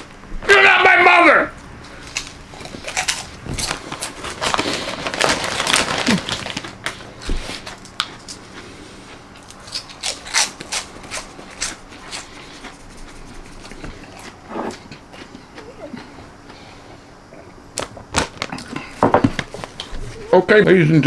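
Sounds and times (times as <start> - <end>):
crisp crunchy chewing: 1.8 - 16.4.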